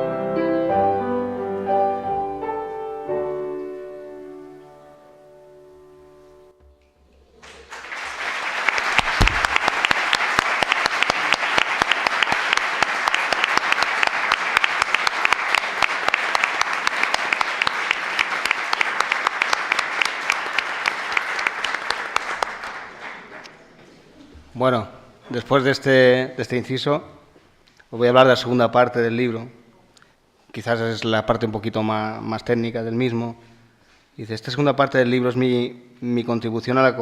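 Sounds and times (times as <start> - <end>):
audience applauding: 7.2 - 23.8.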